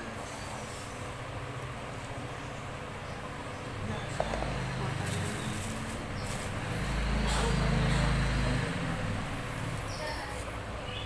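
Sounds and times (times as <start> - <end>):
vehicle engine passing: 3.8 - 10.2.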